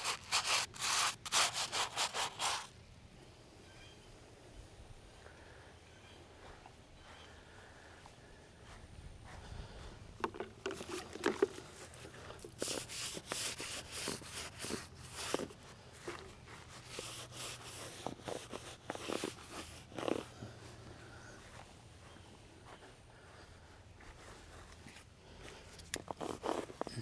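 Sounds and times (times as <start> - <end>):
brush scrubbing stone: 0.0 - 2.7, 10.2 - 20.3, 25.9 - 26.9.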